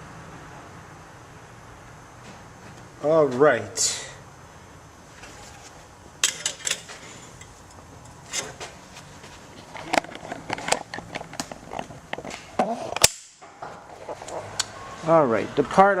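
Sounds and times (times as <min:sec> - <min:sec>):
tools and parts clicking and knocking: 0:06.2 - 0:08.7, 0:09.7 - 0:12.4.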